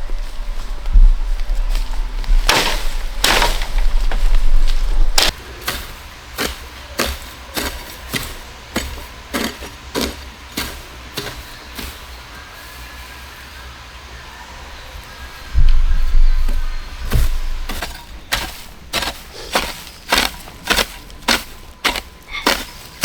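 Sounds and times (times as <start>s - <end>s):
low rumble: 0.0s - 5.3s, 14.4s - 19.0s
hand tool striking bamboo: 2.5s - 4.4s, 5.2s - 12.0s, 15.7s - 23.0s.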